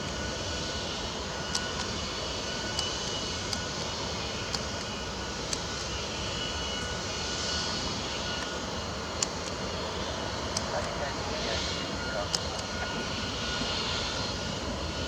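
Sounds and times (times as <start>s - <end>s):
engine-like drone: 0.0s - 15.0s.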